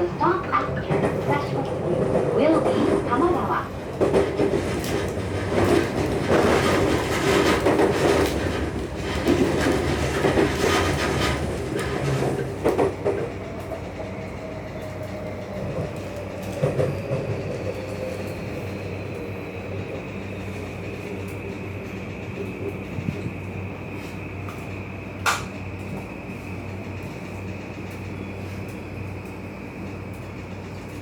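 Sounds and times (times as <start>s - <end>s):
electric train running: 0.0s - 31.0s.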